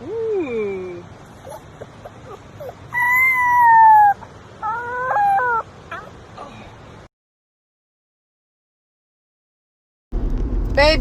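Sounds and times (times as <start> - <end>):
long drawn-out animal calls: 1.4 - 6.7.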